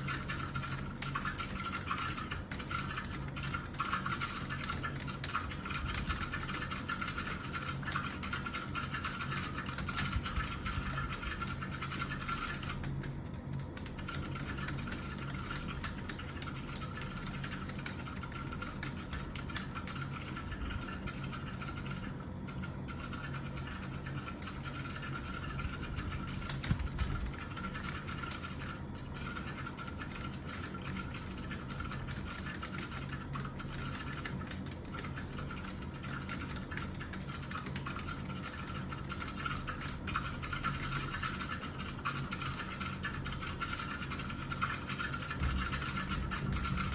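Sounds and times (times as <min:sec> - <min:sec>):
faint steady hum: 0:00.0 - 0:46.9
fast keyboard typing: 0:00.0 - 0:46.9.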